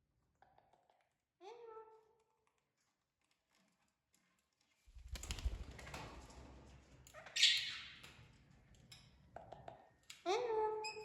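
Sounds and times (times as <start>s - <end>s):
parrot flapping wings: 4.9s - 6.8s.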